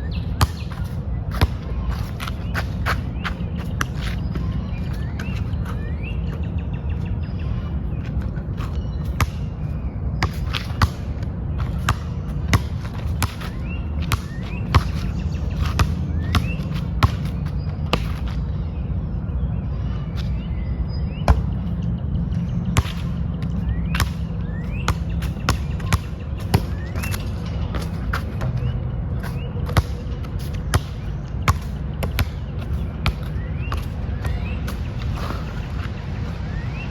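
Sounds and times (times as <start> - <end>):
basketball bouncing: 9.0 - 9.5, 10.2 - 18.3, 21.3 - 21.6, 22.8 - 34.9.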